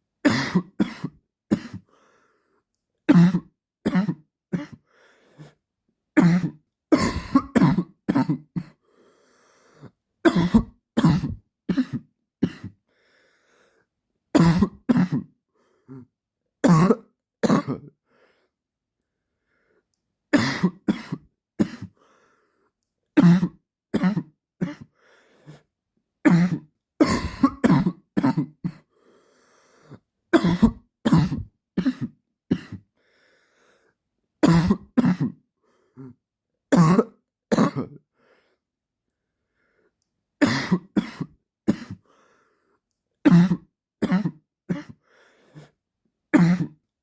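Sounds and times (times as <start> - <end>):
man coughing: 6.2 - 8.8, 10.3 - 12.8, 26.3 - 28.8, 30.4 - 32.8, 34.4 - 35.4.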